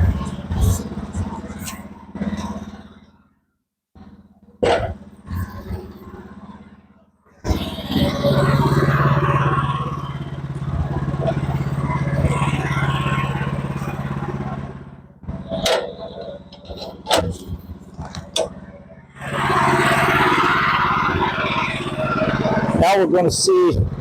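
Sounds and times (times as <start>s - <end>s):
sawmill engine hum: 7.4s - 24.0s.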